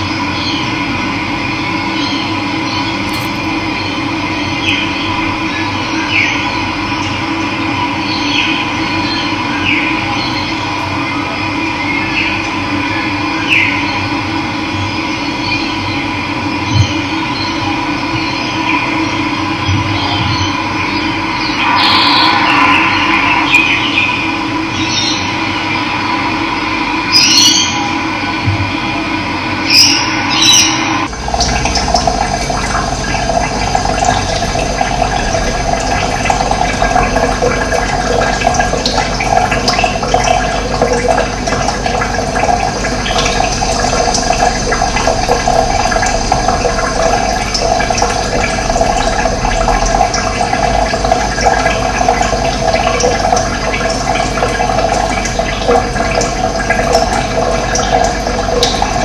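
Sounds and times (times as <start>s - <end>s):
running water rushing: 21.2s - 26.1s, 31.1s - 59.0s.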